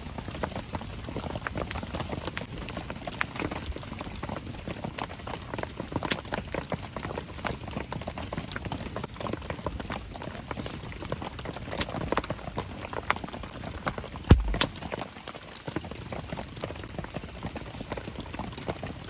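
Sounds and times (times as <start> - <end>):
rain pattering: 0.0 - 19.0
campfire crackling and popping: 14.3 - 14.8
heavy thump: 14.3 - 14.8
sharp crack: 14.3 - 14.8.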